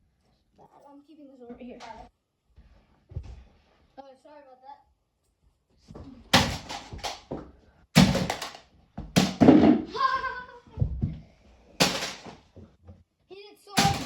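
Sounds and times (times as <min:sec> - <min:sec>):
tennis ball hitting tiles: 0:06.4 - 0:10.0, 0:11.8 - 0:12.7
plastic tiles clattering: 0:08.0 - 0:08.6.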